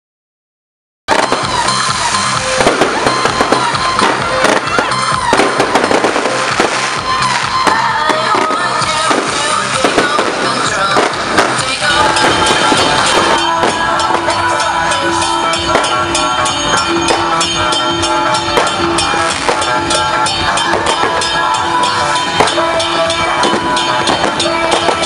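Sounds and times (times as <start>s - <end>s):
firecracker bangs: 1.1s - 25.0s
loud festival music: 1.1s - 25.0s.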